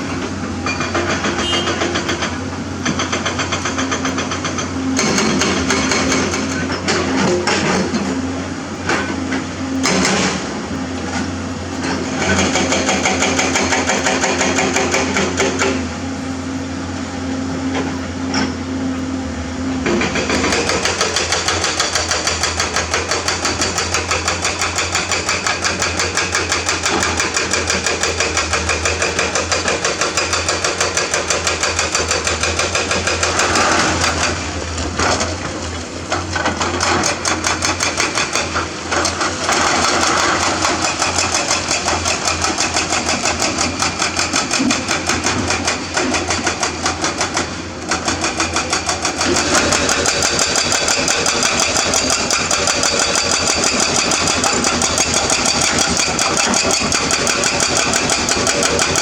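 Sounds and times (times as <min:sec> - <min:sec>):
excavator diesel engine: 0:00.0 - 0:59.0
fast mechanical clatter: 0:36.1 - 0:59.0.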